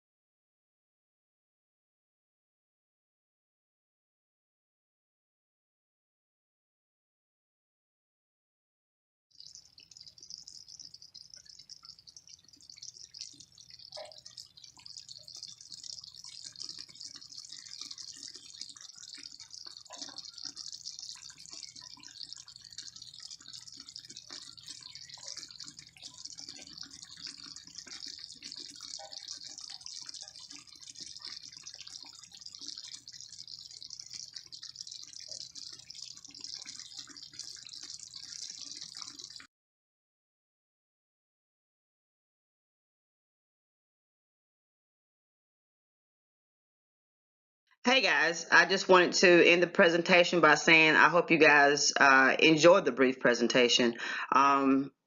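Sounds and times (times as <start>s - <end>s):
oil sizzling in a frying pan: 9.4s - 39.5s.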